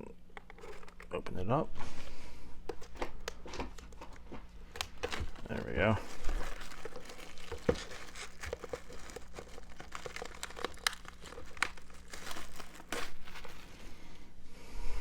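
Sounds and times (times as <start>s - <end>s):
plastic shrink wrap crinkling: 0.3s - 14.4s.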